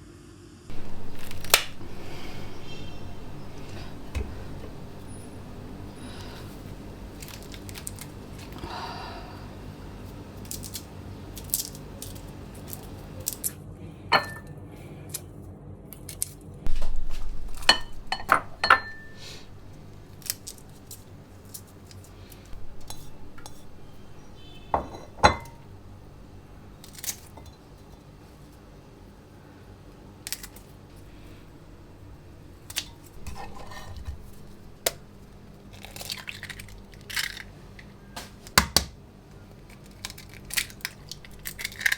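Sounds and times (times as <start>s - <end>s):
faint steady hum: 0.0s - 15.2s, 16.6s - 41.9s
dishes and cutlery clinking: 0.7s - 8.6s, 14.1s - 14.5s, 16.7s - 26.1s, 32.8s - 34.8s.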